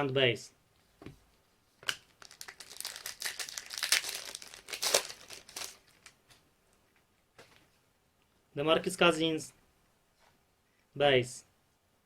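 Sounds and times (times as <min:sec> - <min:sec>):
plastic wrapper crinkling and tearing: 0:01.8 - 0:06.2.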